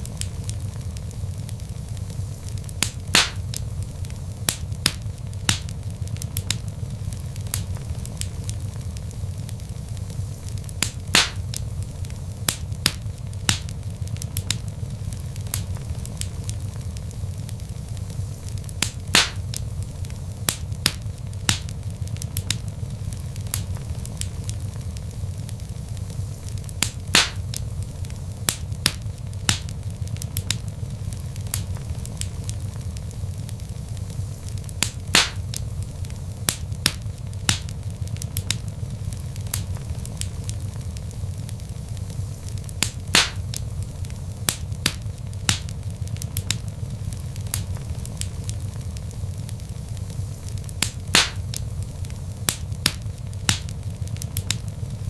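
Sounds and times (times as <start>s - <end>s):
fire popping: 0.0s - 55.0s
log fire crackling: 0.0s - 55.0s
low rumble of flames: 0.0s - 55.0s.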